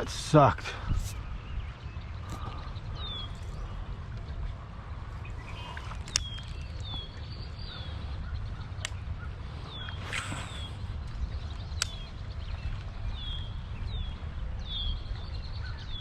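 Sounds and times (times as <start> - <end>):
bird chirping: 0.0 - 16.0
steady low rumble: 0.0 - 16.0
sharp clicks: 9.8 - 12.2.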